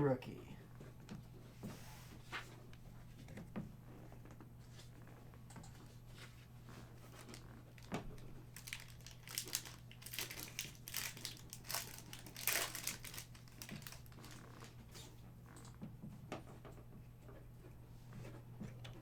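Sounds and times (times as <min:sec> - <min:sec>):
foil wrapper crinkling: 0:06.9 - 0:15.0.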